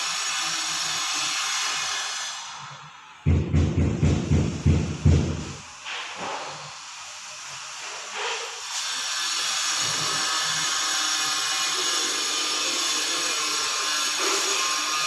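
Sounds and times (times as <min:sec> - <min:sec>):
low knocks: 0:03.3 - 0:05.6.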